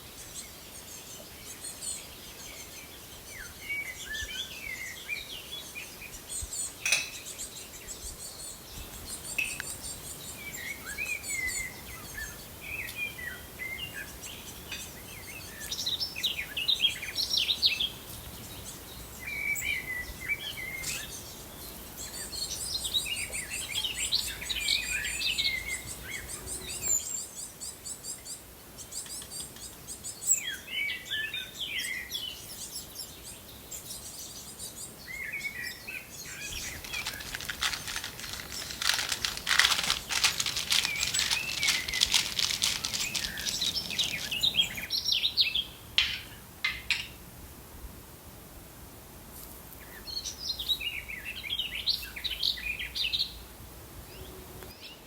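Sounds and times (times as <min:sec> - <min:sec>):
songbirds chirping: 0:00.0 - 0:47.2, 0:49.8 - 0:55.0
rapid clicking and rustling: 0:36.4 - 0:44.8.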